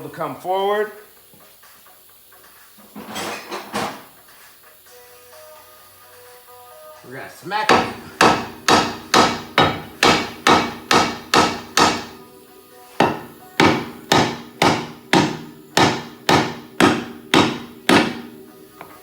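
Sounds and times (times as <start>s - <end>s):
hammer blows on metal: 7.6s - 12.3s, 12.9s - 18.9s.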